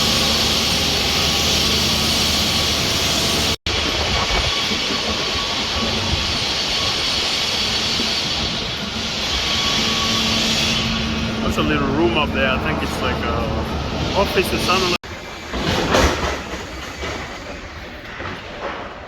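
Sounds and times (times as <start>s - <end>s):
strong wind buffeting microphone: 3.4s - 15.5s.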